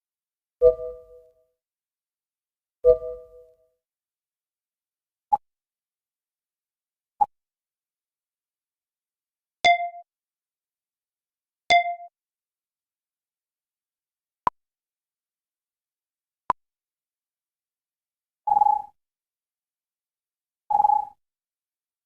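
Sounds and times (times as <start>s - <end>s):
chiming computer dings: 2.9s - 3.5s, 9.7s - 10.0s, 11.7s - 12.1s.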